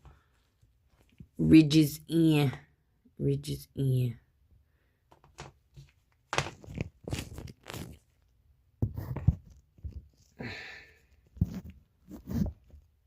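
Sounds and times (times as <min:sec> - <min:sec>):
rubber belt rubbing and scraping: 0:05.7 - 0:10.4, 0:11.4 - 0:13.0.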